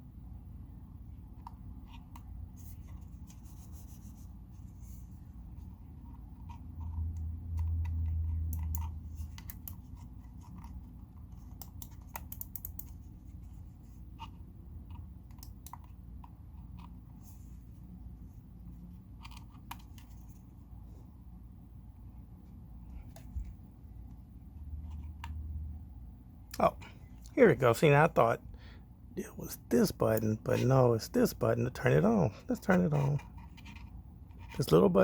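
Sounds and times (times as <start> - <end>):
computer mouse clicks and scratching: 1.3 - 17.3, 18.7 - 20.5, 24.8 - 25.5, 32.7 - 34.8.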